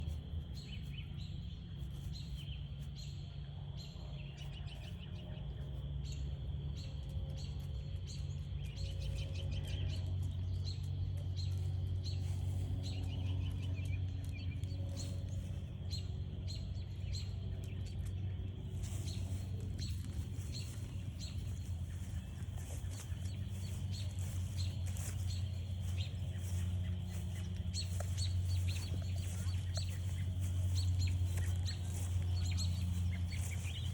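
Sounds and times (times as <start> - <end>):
birds chirping with trills: 0.0 - 33.9
steady low hum: 0.0 - 33.9
frogs calling: 22.0 - 33.9.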